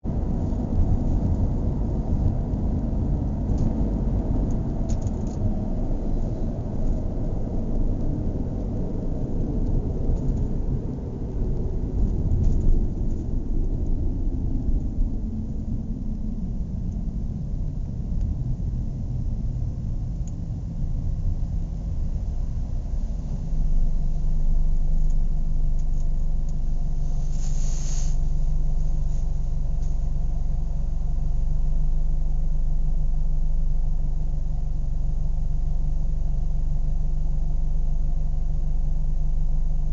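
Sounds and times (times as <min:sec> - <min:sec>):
brief hiss: 0:27.0 - 0:28.4.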